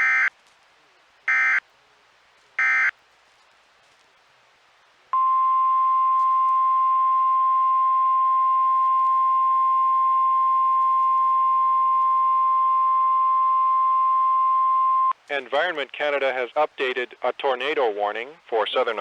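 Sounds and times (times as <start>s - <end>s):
steady alarm beep: 1.3s - 1.6s, 2.6s - 2.9s.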